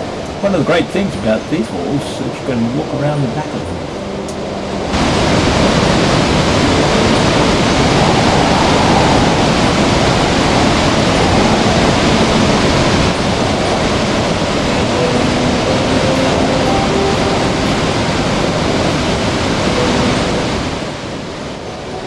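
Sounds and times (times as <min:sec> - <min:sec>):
waterfall rushing: 0:00.0 - 0:22.0
wind buffeting microphone: 0:03.7 - 0:22.0.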